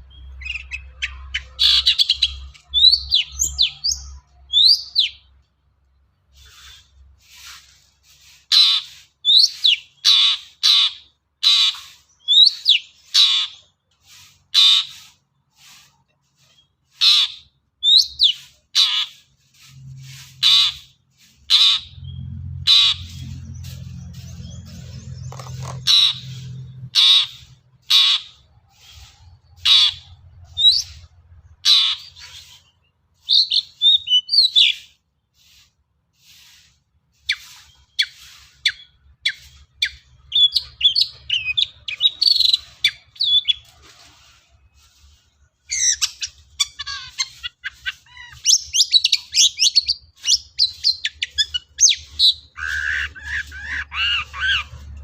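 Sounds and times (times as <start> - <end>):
shrike singing and chattering: 0.1 - 5.3, 8.5 - 13.7, 20.3 - 36.6, 37.2 - 43.7, 45.7 - 55.0.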